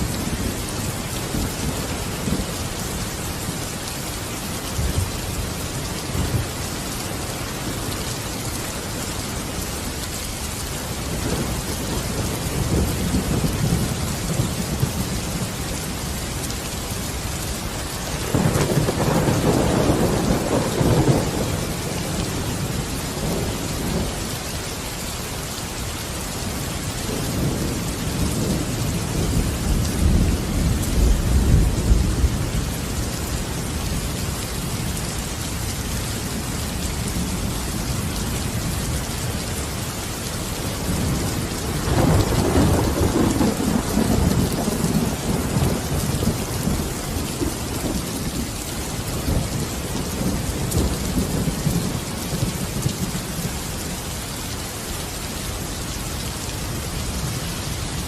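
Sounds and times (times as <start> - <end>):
steady rain: 0.0 - 58.0
rolling thunder: 18.2 - 24.2, 40.8 - 48.5.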